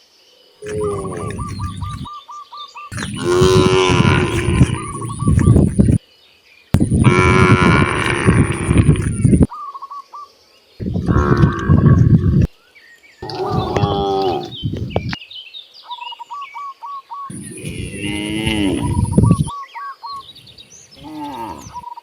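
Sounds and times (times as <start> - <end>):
cows mooing: 0.6 - 2.1, 2.9 - 6.0, 6.8 - 9.5, 10.8 - 12.5, 13.2 - 15.1, 17.3 - 19.5.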